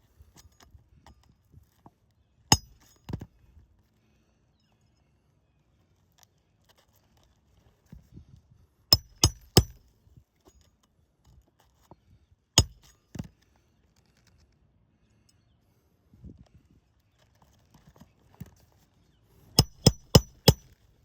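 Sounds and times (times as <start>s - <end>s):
hammer striking nails: 9.0s - 9.8s, 12.6s - 12.9s, 19.6s - 20.7s.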